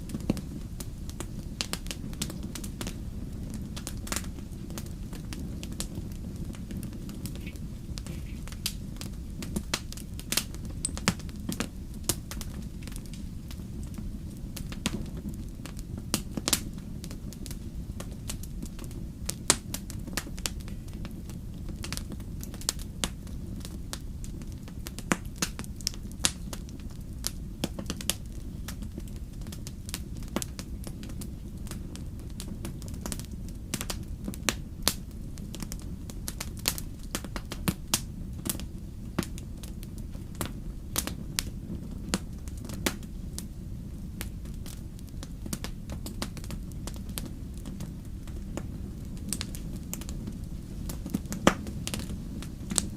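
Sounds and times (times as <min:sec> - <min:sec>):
campfire crackling and popping: 0:00.0 - 0:52.9.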